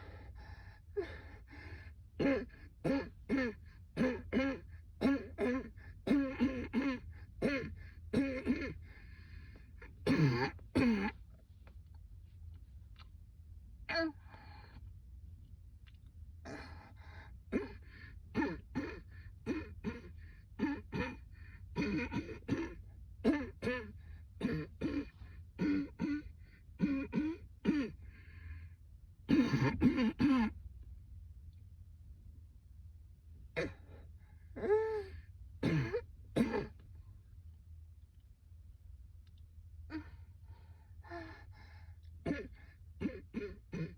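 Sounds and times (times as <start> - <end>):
woman coughing: 2.2 - 8.8, 10.0 - 11.2, 17.5 - 28.0, 29.3 - 30.5, 33.6 - 34.0, 35.6 - 36.8, 42.2 - 43.9
throat-clearing: 10.0 - 11.2, 18.4 - 28.0, 33.6 - 34.0, 35.6 - 36.8.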